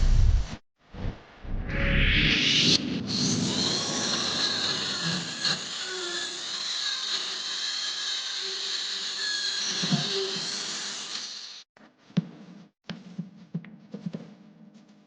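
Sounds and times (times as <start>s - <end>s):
small power tool grinding metal: 3.1s - 11.7s.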